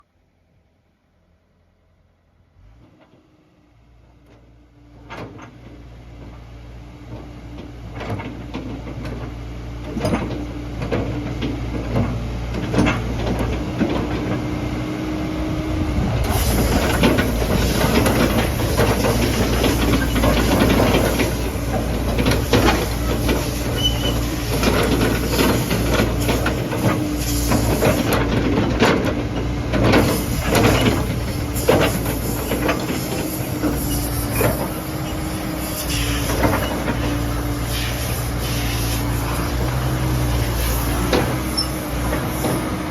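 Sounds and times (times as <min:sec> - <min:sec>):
excavator diesel engine running: 0:00.8 - 0:42.9.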